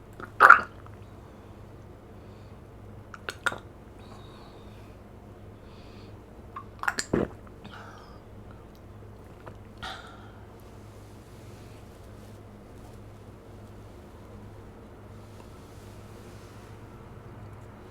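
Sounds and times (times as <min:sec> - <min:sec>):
soft breaths: 0:00.8 - 0:06.6, 0:07.5 - 0:17.9
wet mouth clicks and smacks: 0:03.1 - 0:03.7, 0:06.6 - 0:07.5
swallowing: 0:03.1 - 0:04.4, 0:06.6 - 0:10.8.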